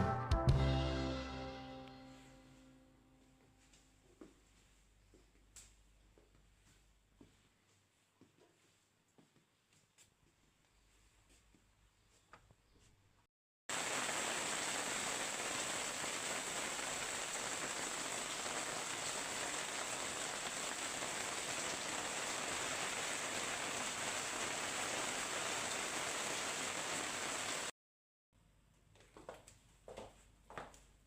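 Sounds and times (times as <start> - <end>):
rain falling steadily: 13.7 - 27.7.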